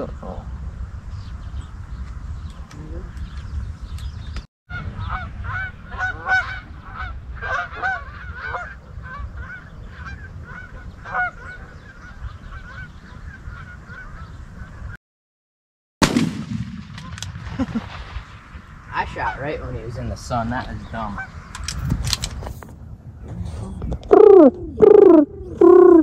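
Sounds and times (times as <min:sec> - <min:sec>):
low wind rumble: 0:00.0 - 0:15.0, 0:16.0 - 0:26.0
geese honking: 0:04.7 - 0:15.0, 0:20.9 - 0:21.5.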